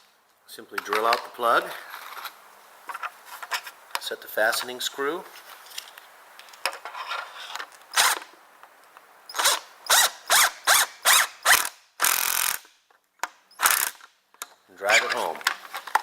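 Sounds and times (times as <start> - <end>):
power drill driving screw: 7.9 - 8.3, 9.3 - 12.7, 13.5 - 14.0.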